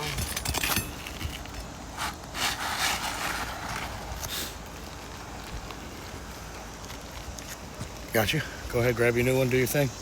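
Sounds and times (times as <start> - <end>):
roof shingle scraping: 0.0 - 4.6.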